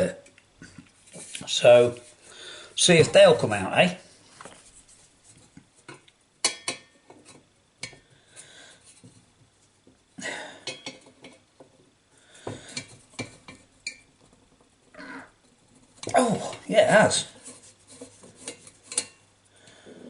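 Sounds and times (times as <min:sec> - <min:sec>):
tool scraping metal: 0:17.2 - 0:19.2.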